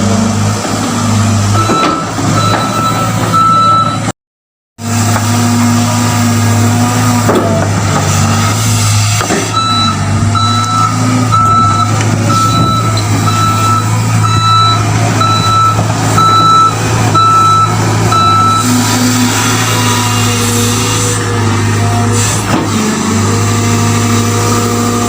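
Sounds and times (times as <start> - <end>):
excavator diesel engine running: 0.0 - 4.1, 4.8 - 25.0
reversing alarm beeping: 1.6 - 4.1, 9.5 - 21.2.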